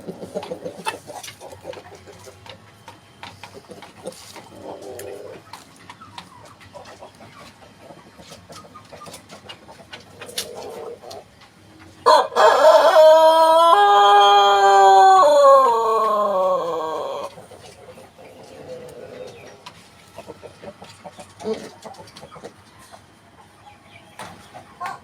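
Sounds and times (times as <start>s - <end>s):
rooster crowing: 12.0s - 17.3s.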